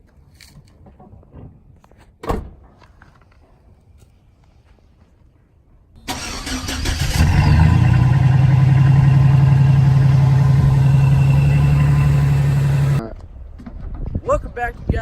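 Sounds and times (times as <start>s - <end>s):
engine cranking and running: 6.1s - 13.0s.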